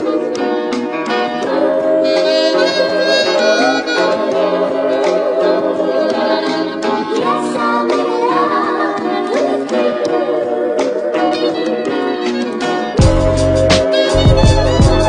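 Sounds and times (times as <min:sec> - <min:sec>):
background music with sliding pitches: 0:00.0 - 0:15.0.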